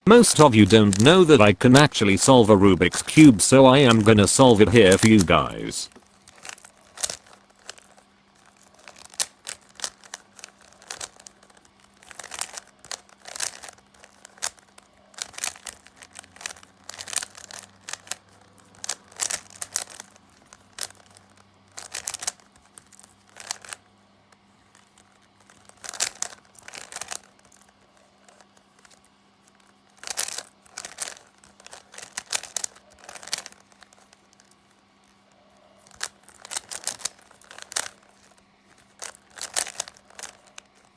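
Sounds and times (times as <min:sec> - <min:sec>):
puzzle cube clicking and scraping: 0:00.1 - 0:21.1, 0:29.6 - 0:34.2, 0:35.7 - 0:40.9.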